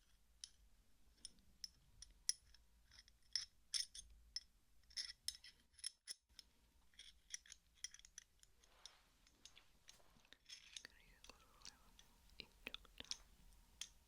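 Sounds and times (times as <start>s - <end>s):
metal wrench clicking: 7.0s - 8.3s.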